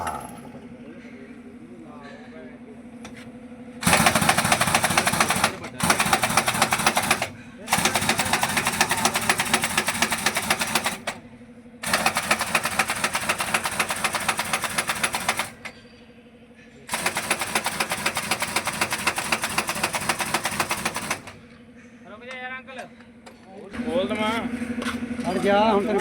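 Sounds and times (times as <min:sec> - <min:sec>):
pneumatic impact wrench hammering: 0:03.0 - 0:11.2, 0:11.8 - 0:15.8, 0:16.9 - 0:21.5.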